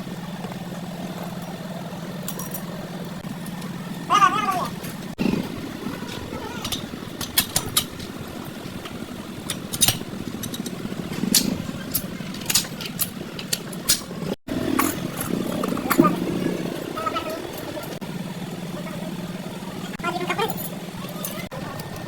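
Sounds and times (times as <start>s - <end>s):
low engine-like hum: 0.0s - 22.0s
sharp clicks and knocks: 4.5s - 16.2s.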